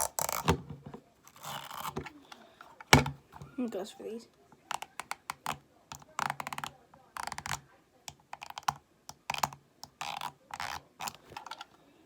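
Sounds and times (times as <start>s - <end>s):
scratchy rubbing on plastic: 0.0s - 2.8s, 4.6s - 11.7s
plastic fidget cube clicking: 4.7s - 11.7s.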